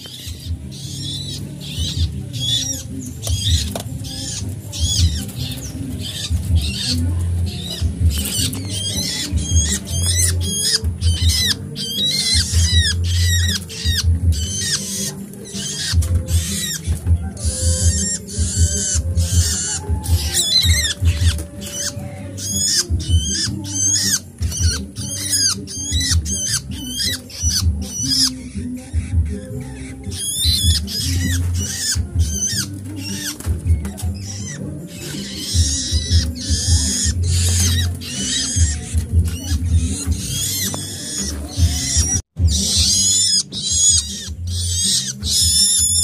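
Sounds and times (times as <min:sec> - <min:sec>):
nestlings chirping shrilly: 0:00.0 - 0:46.0.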